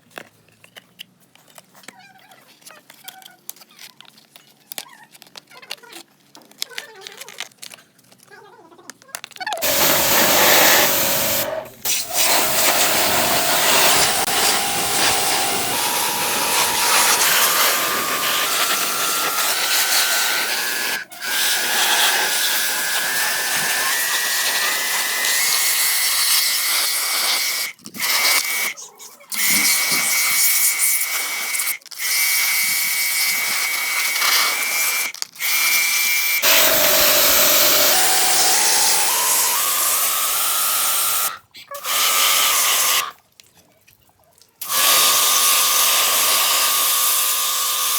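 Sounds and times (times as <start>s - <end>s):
loud rushing noise: 9.6s - 20.3s
washing machine motor whining: 9.6s - 27.3s, 36.4s - 43.0s, 44.6s - 47.9s.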